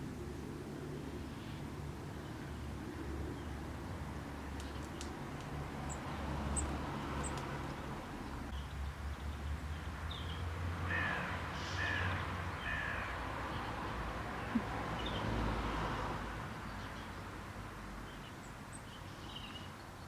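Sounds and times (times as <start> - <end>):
harsh crow-like calls: 10.8 - 13.6.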